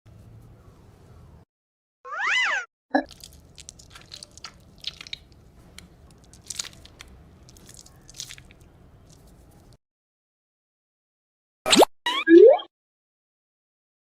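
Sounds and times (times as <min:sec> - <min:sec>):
sand crunching and squishing: 0:03.1 - 0:09.8.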